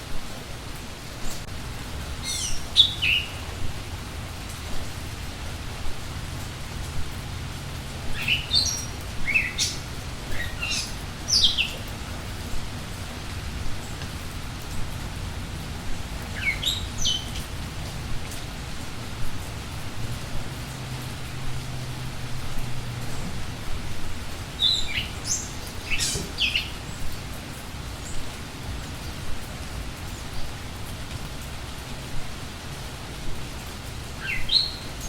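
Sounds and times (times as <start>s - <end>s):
steady rain falling: 0.0s - 35.0s
songbird singing falling notes: 8.1s - 11.9s, 24.6s - 26.9s.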